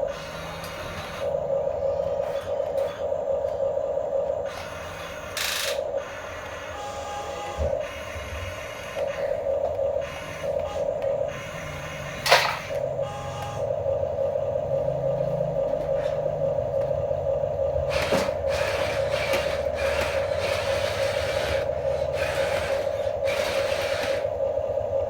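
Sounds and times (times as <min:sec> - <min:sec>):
toy vehicle motors whining: 0:00.0 - 0:03.0, 0:04.4 - 0:13.7, 0:17.8 - 0:24.4.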